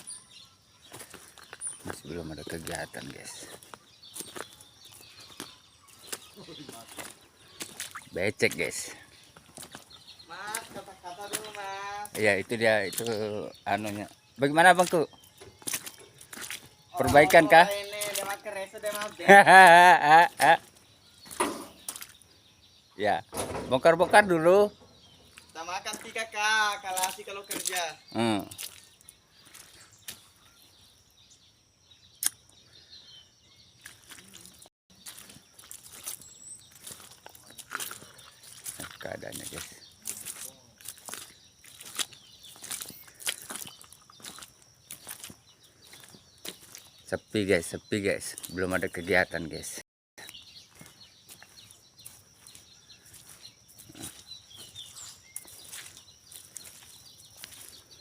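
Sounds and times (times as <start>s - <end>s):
bird chirps: 0.0s - 58.0s
sharp click: 32.2s - 32.4s.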